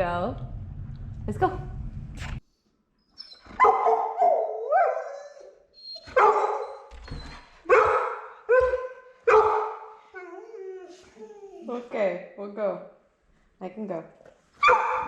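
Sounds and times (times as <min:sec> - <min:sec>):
puppy barking and yelping: 0:03.2 - 0:06.9, 0:07.7 - 0:10.0, 0:14.6 - 0:15.0.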